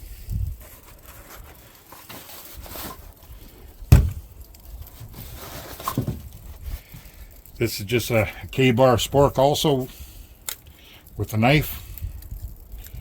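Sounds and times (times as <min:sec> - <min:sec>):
gear rustling and scraping: 0:00.3 - 0:08.3
sharp knock: 0:03.9 - 0:04.2.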